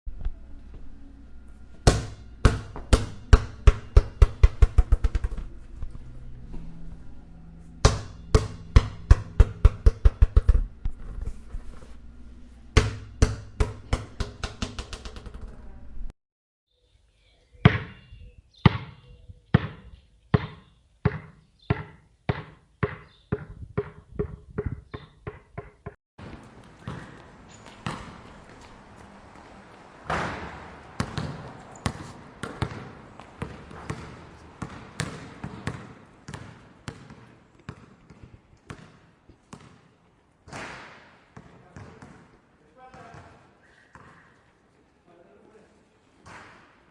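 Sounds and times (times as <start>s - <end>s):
basketball bouncing on hard floor: 1.9s - 5.5s, 7.8s - 10.7s, 12.8s - 15.6s, 20.4s - 26.0s, 33.4s - 39.8s.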